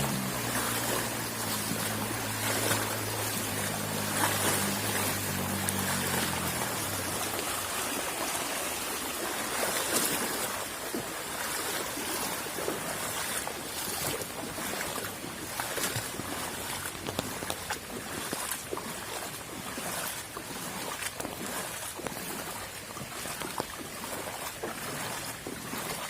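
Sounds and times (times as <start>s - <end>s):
low hum: 0.0s - 9.1s
floodwater rushing: 0.0s - 26.0s.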